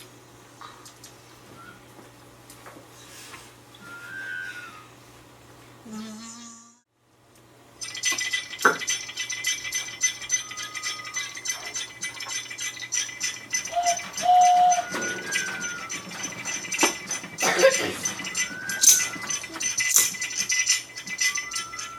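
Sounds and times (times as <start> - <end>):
dense clicking rattle: 7.8 - 21.9.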